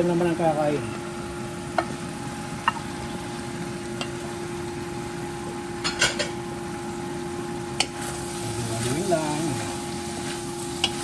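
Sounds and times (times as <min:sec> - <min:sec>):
faint steady hum: 0:00.0 - 0:11.0
food sizzling in a frying pan: 0:07.7 - 0:11.0.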